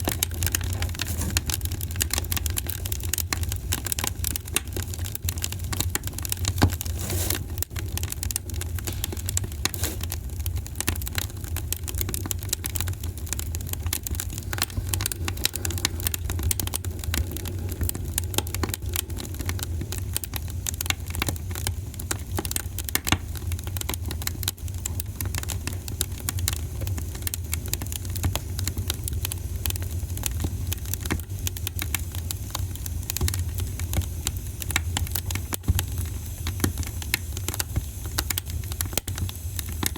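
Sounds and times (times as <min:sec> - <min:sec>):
fire crackling in fireplace: 0:00.0 - 0:39.9
low rumble of fire: 0:00.0 - 0:39.9.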